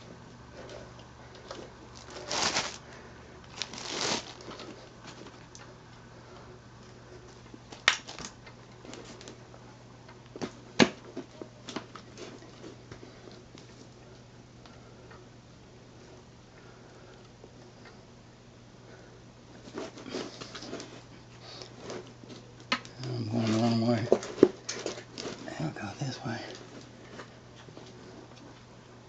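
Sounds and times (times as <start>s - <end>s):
scraping rustles: 1.5s - 2.9s, 3.5s - 5.4s.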